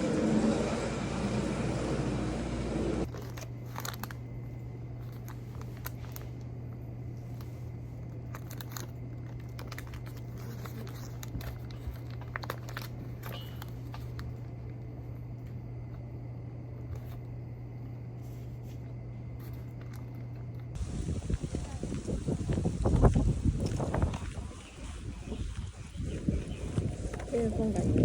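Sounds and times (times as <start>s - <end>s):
loud even background noise: 0.0s - 3.1s
steady low hum: 0.0s - 28.0s
crinkling and clicking handling: 3.0s - 16.0s, 18.8s - 20.8s.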